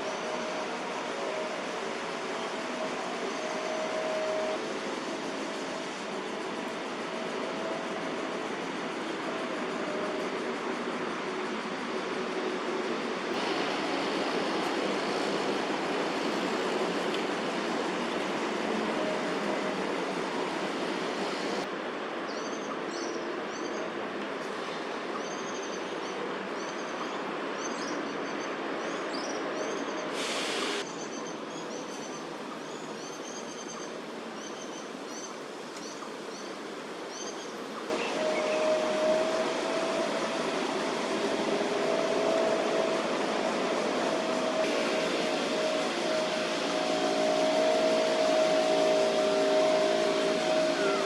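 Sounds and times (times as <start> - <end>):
mechanical drone: 37.9 - 51.0.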